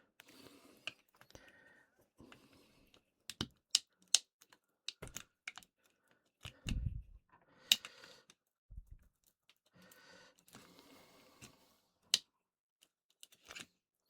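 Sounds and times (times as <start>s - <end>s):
pry tool clicking on plastic: 3.3s - 5.7s.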